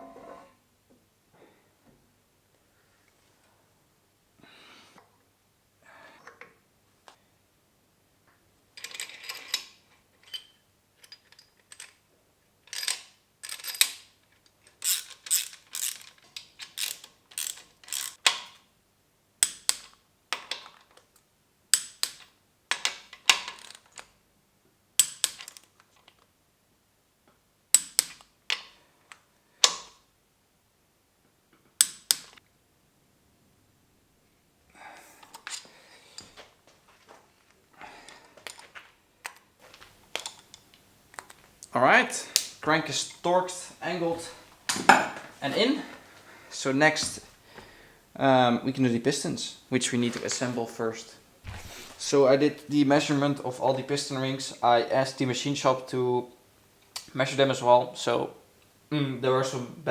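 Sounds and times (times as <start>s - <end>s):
ratchet wrench clicking: 14.8s - 18.4s.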